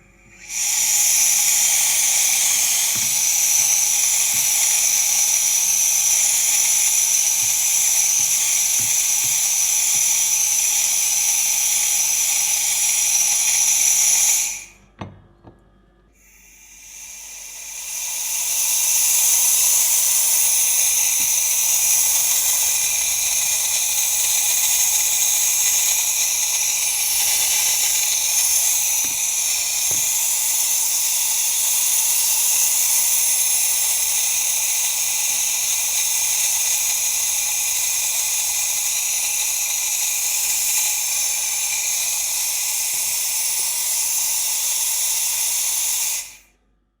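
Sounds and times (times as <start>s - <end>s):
steam wand hissing: 0.0s - 14.9s, 16.2s - 46.6s.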